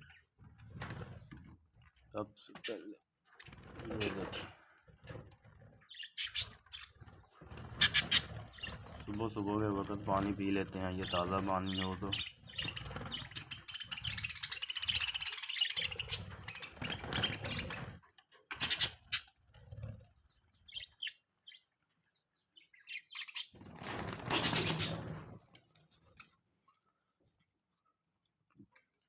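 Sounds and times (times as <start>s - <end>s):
budgies chirping: 2.5s - 21.7s, 22.4s - 25.3s.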